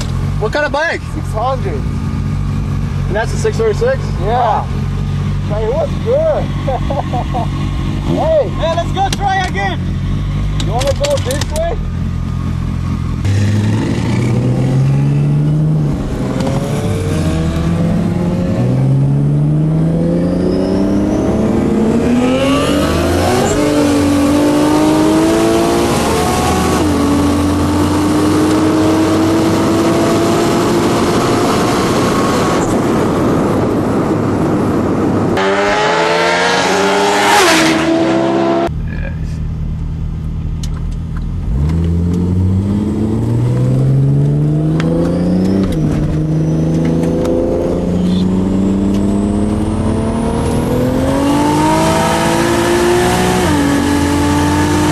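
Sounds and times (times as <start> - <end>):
engine accelerating through gears: 9.4 - 32.8, 40.7 - 54.9.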